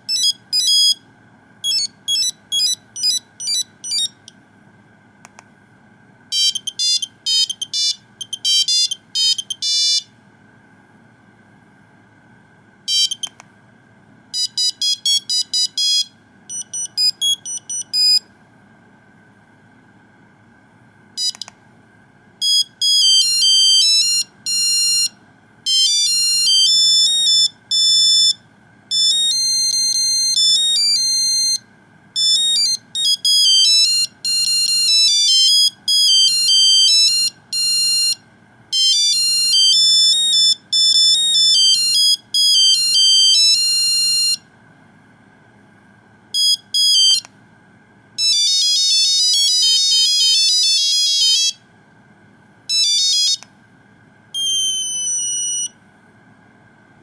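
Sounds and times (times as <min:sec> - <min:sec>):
monophonic ringtone melody: 0:01.6 - 0:04.2, 0:06.3 - 0:10.1, 0:14.4 - 0:18.2, 0:38.8 - 0:44.4, 0:48.2 - 0:51.6, 0:52.7 - 0:53.4, 0:54.4 - 0:55.7.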